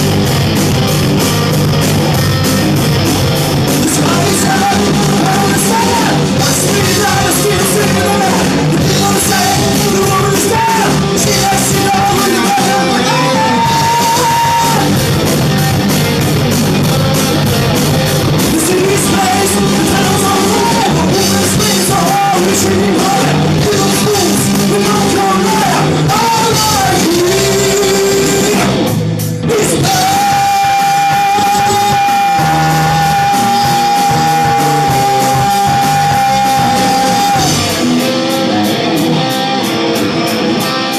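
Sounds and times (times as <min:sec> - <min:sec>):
hard rock song: 0:00.0 - 0:40.9
person singing: 0:03.7 - 0:15.0, 0:18.4 - 0:38.8.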